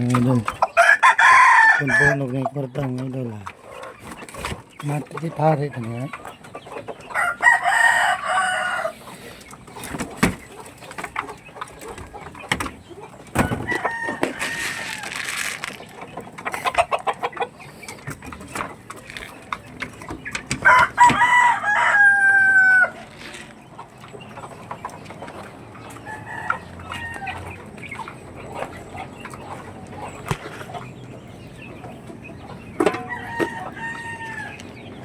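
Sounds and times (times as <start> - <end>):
chickens clucking: 0.0 - 35.0
rooster crowing: 0.8 - 2.2, 7.2 - 9.0, 13.4 - 15.3, 20.6 - 23.0, 33.0 - 34.6.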